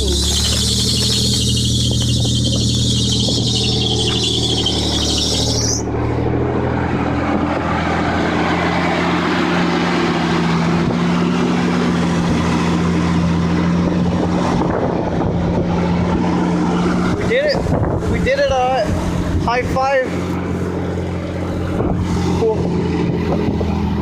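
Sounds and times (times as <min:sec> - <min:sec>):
high-pitched squeal: 0:00.0 - 0:06.8
car engine idling: 0:00.0 - 0:24.0.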